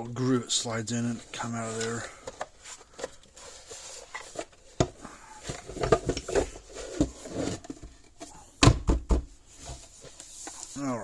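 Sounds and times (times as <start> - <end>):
plastic parts clicking and knocking: 4.1 - 9.3.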